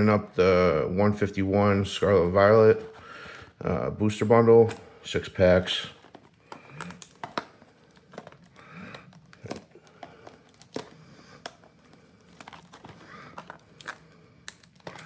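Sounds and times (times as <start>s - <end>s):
packaging crinkled and torn: 4.6s - 15.0s.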